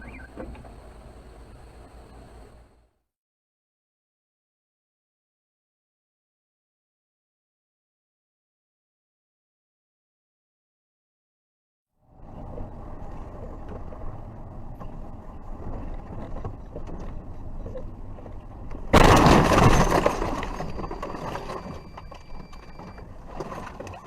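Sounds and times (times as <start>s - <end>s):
car road noise: 12.0s - 24.0s
car collision crash: 18.9s - 22.1s.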